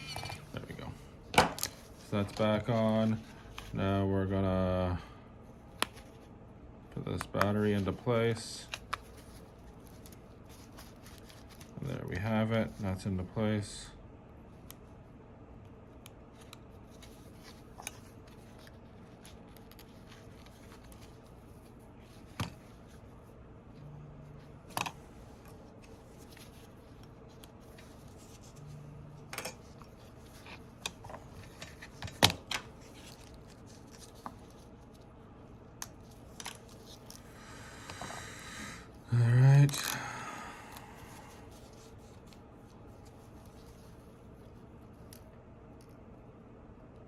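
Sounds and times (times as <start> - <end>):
faint steady hum: 0.0 - 47.0.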